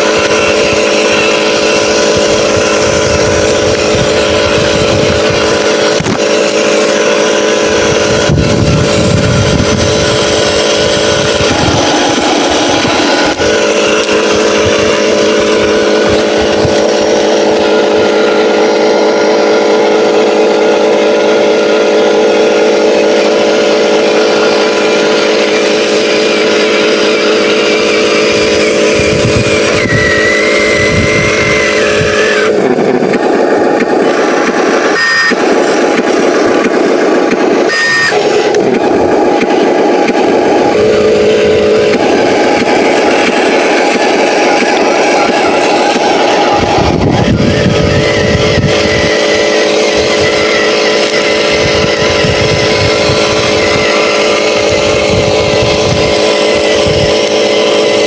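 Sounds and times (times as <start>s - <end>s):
toy truck engine running: 0.0s - 58.0s.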